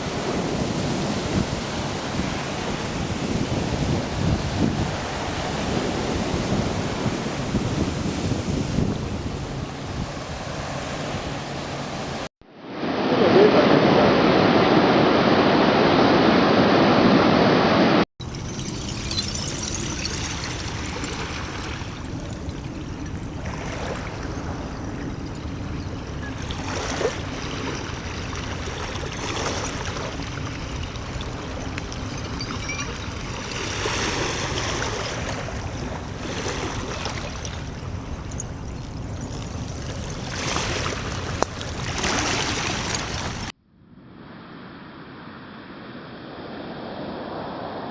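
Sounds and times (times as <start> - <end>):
sea waves breaking: 0.0 - 12.3, 18.2 - 43.6.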